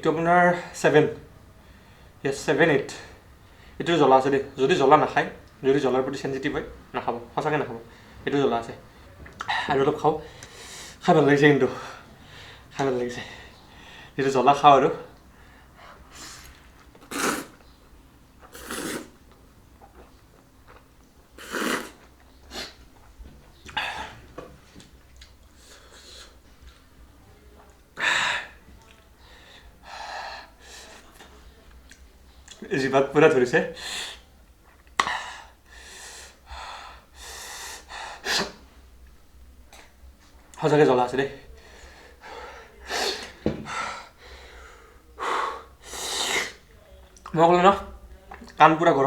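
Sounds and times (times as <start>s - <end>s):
man breathing and slurping noodles: 16.0s - 17.6s, 18.5s - 19.2s, 21.4s - 22.8s.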